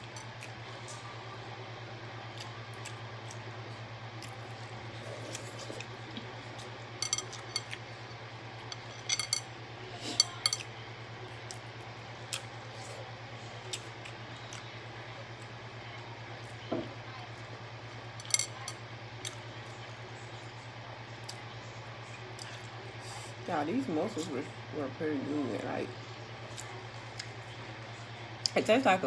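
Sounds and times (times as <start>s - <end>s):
mussel shells clinking: 7.0s - 7.7s, 18.2s - 18.7s.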